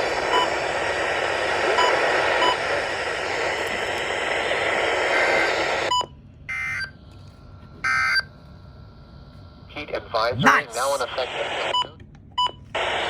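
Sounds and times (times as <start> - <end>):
radio static hiss: 0.0 - 5.9, 9.6 - 12.0, 12.8 - 13.0.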